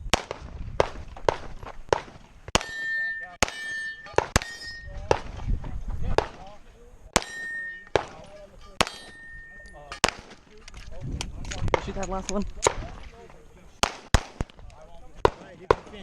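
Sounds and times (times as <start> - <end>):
pistol shots: 0.1 - 5.4, 7.1 - 8.2, 8.8 - 9.4, 10.0 - 10.5, 13.8 - 14.6, 15.2 - 16.0
steel targets ringing: 2.6 - 5.1, 7.2 - 10.0.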